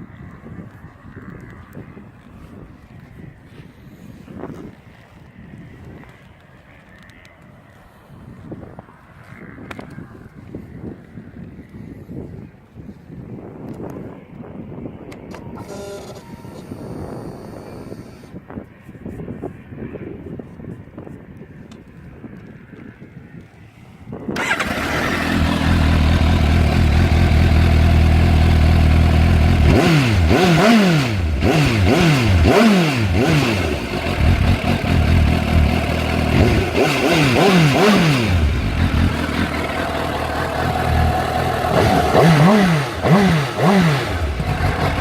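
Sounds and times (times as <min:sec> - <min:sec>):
motorcycle engine idling: 0:24.4 - 0:29.8, 0:33.6 - 0:45.0
motorcycle engine revving: 0:24.4 - 0:45.0.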